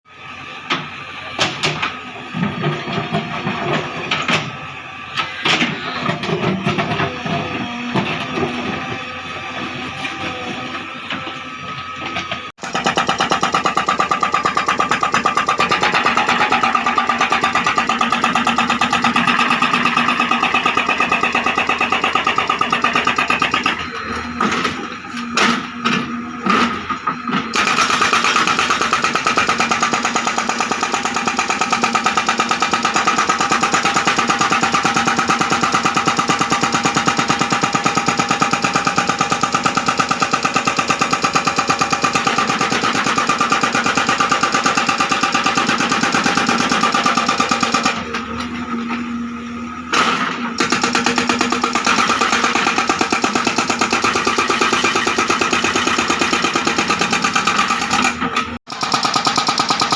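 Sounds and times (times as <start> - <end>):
engine running: 0.1 - 59.9
hydraulic breaker hammering: 11.8 - 49.1, 49.8 - 59.9.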